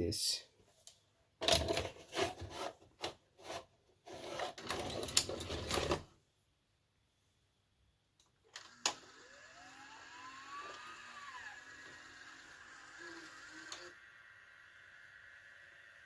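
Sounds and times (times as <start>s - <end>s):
motors whirring faintly: 8.6s - 16.0s.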